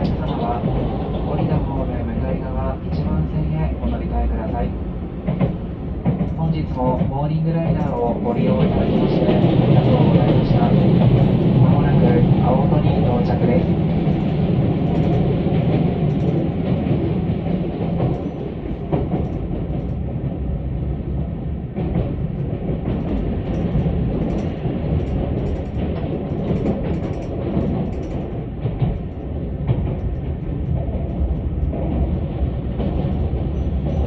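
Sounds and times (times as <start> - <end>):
train rolling rumble: 0.0 - 34.0
wheels clicking over rail joints: 12.9 - 20.1, 21.8 - 34.0.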